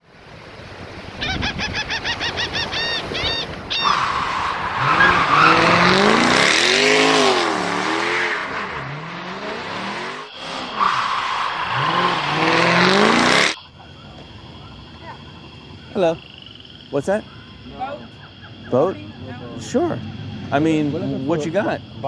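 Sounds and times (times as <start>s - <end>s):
tires squealing: 1.1s - 22.0s
car engine revving: 3.7s - 22.0s
high chirps: 8.8s - 22.0s.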